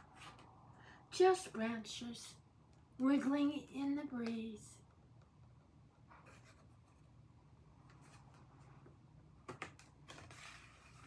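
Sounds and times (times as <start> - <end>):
paper book pages rustling: 9.8 - 11.0.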